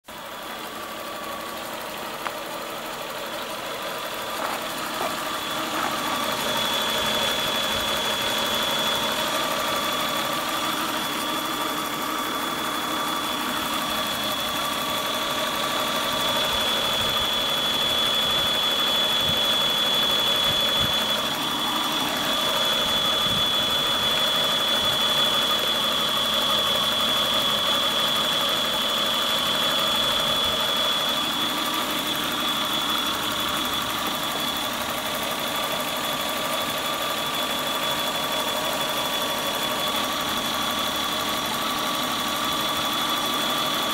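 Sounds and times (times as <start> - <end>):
car engine idling: 0.1 - 43.9
high-pitched whistle: 16.2 - 34.7.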